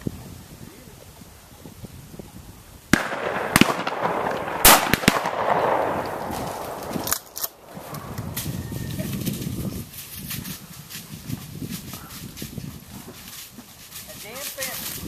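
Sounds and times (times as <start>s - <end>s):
shotgun shots: 2.9s - 8.1s.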